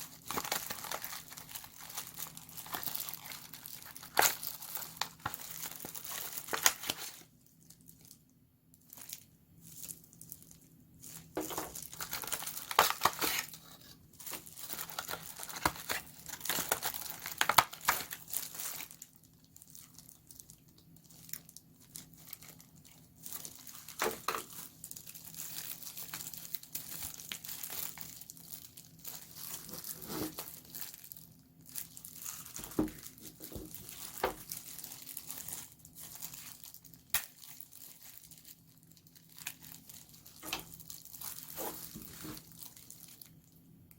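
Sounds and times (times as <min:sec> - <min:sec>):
packaging crinkling and rustling: 0:00.0 - 0:43.9.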